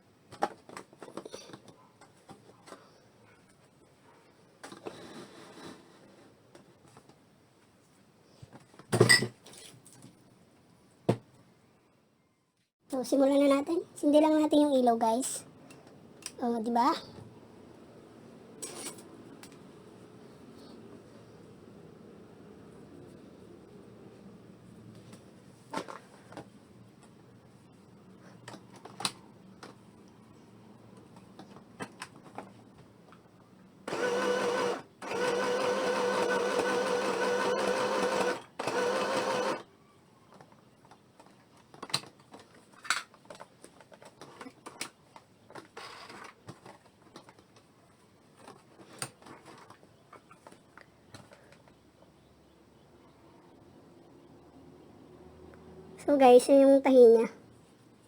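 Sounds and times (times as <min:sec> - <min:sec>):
sewing machine motor humming: 0:33.9 - 0:39.6.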